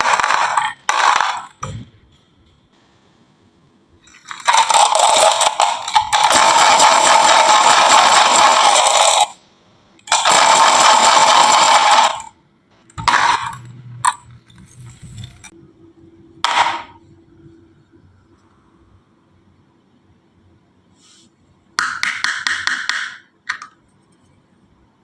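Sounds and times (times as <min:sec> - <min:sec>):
marbles rolling down track: 0:00.0 - 0:01.6, 0:04.1 - 0:09.4, 0:10.1 - 0:12.3, 0:13.0 - 0:15.5
marbles clacking on track: 0:00.0 - 0:01.7, 0:04.2 - 0:09.4, 0:10.1 - 0:12.3.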